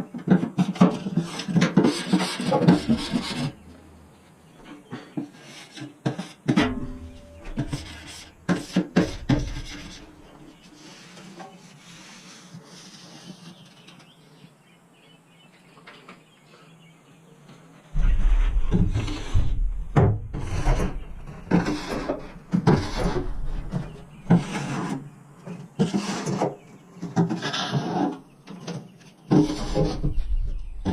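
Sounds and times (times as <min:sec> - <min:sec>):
scraping and rubbing: 0:00.3 - 0:14.1, 0:17.9 - 0:30.9
sharp knocks: 0:06.5 - 0:10.3, 0:18.0 - 0:24.5.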